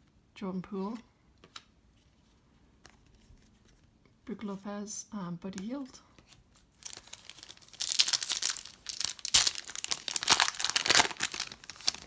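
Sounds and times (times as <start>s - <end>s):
plastic foil wrapper crinkling: 6.8s - 12.0s.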